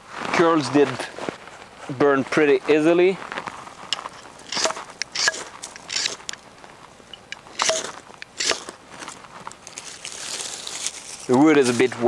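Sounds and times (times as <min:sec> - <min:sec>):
wood fire crackling: 0:03.2 - 0:12.0
sharp pops: 0:07.2 - 0:08.7.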